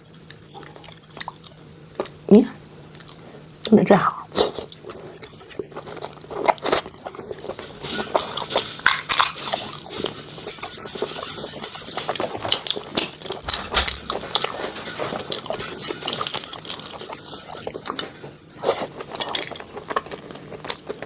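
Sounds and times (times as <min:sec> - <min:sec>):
chewing with wet mouth clicks: 0:00.0 - 0:02.2, 0:02.9 - 0:14.6.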